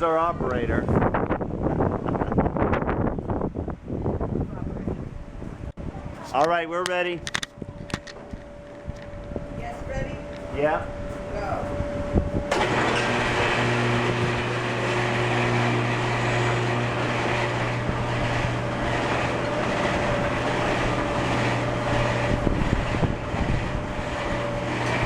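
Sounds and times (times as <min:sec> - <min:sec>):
carousel machinery humming and rattling: 0:07.2 - 0:25.0.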